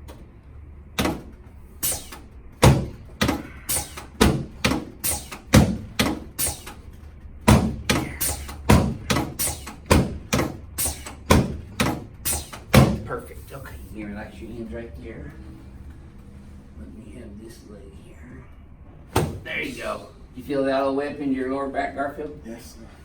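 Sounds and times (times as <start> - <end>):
sharp knocks: 1.0 - 13.3, 19.1 - 19.6.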